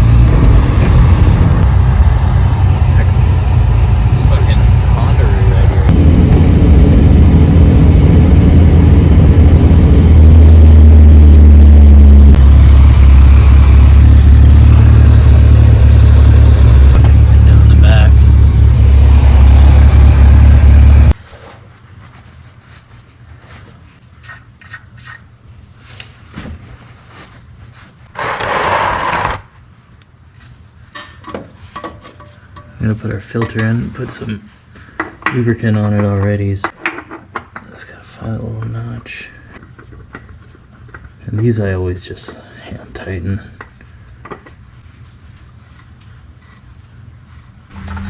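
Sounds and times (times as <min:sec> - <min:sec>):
car engine droning: 0:00.0 - 0:21.2, 0:47.7 - 0:48.0.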